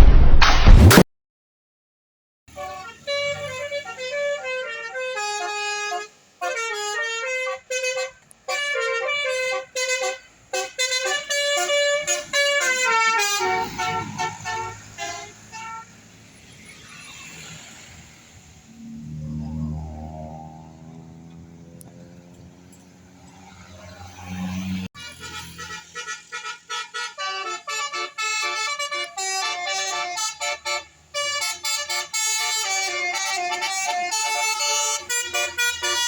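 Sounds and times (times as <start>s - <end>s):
multi-tone air horn melody: 2.5s - 16.1s, 24.2s - 36.0s
bus rumble: 2.5s - 36.0s.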